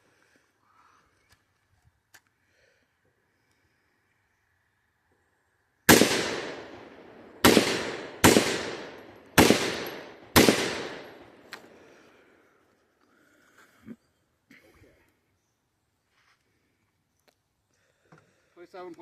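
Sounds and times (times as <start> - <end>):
rifle shots with echo: 5.9 - 11.8.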